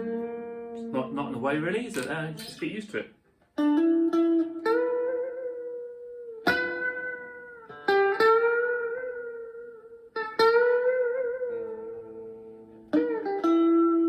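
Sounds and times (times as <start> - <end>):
clean electric guitar notes: 0.0 - 1.2.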